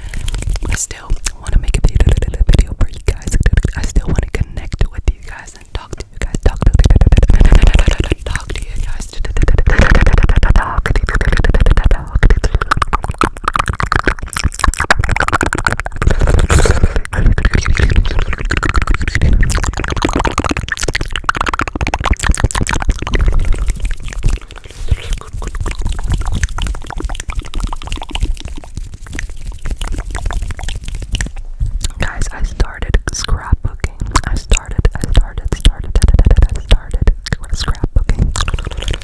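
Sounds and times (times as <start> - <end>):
mouth clicks and smacks: 0.0 - 39.0
hand sounds: 5.6 - 33.2.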